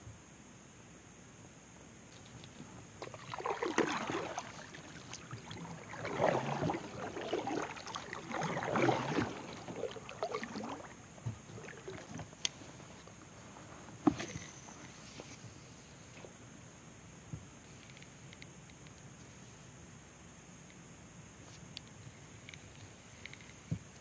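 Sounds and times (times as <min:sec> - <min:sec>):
kayak paddle splashing in water: 0:03.0 - 0:12.4.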